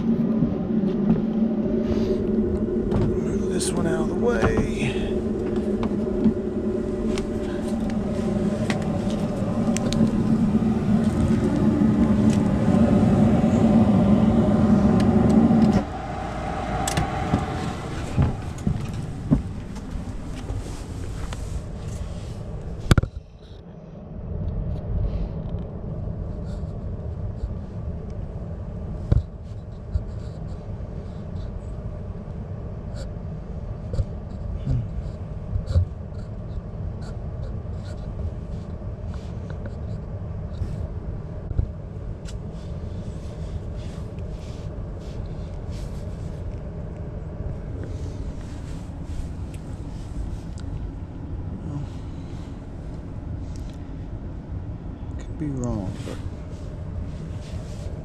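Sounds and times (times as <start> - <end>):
low rumble: 0.0 - 58.0
machine hum: 0.0 - 58.0.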